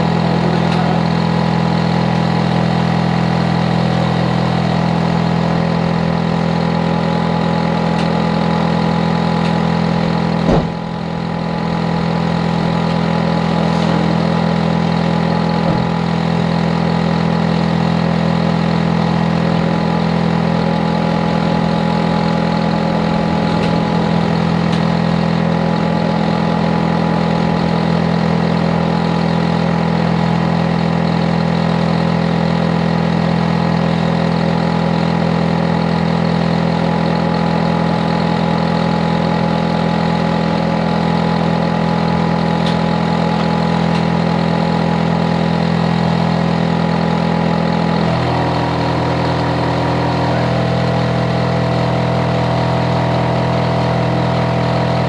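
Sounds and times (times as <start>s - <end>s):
sharp knock: 10.4s - 11.0s.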